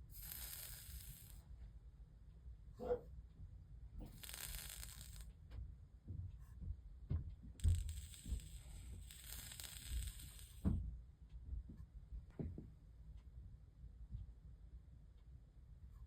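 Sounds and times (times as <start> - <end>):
flux sizzling: 0.1 - 1.4, 7.6 - 10.6.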